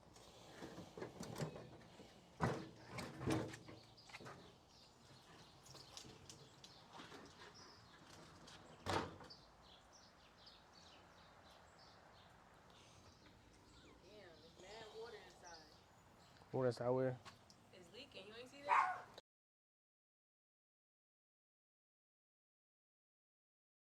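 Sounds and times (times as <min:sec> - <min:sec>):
faint birds chirping: 0:00.0 - 0:19.2
grill clunking and scraping: 0:00.3 - 0:04.6.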